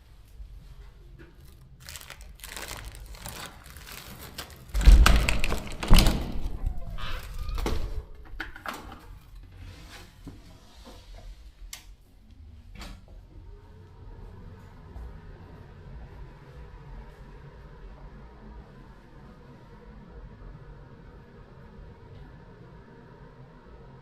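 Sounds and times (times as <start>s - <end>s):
rustling: 0.1s - 8.4s
heavy thumps: 4.8s - 8.4s
knocks and clicks: 4.8s - 8.8s.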